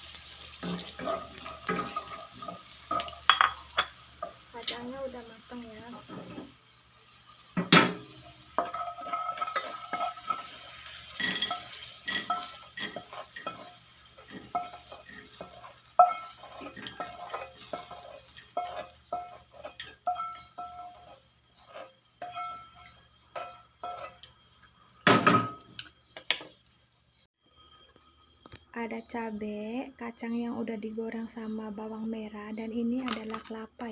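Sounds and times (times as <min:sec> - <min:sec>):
metal spatula scraping wok: 0:00.0 - 0:24.6
faint sizzle: 0:00.0 - 0:30.6
pan ringing: 0:22.2 - 0:25.7.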